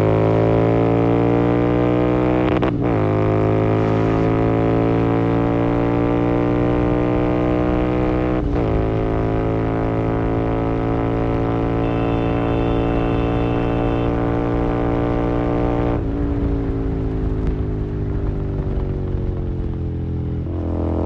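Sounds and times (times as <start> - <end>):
motorcycle engine revving: 0.0 - 21.0.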